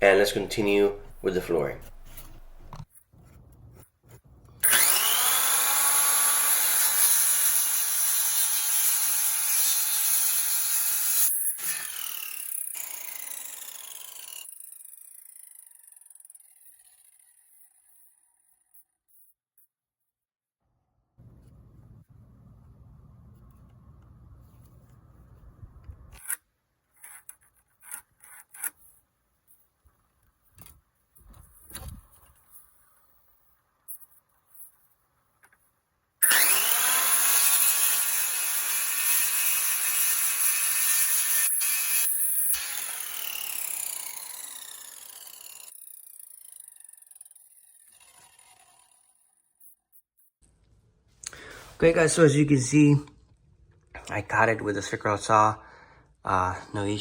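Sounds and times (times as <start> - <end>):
circular saw cutting vinyl plank: 4.6 - 14.5, 36.2 - 46.8.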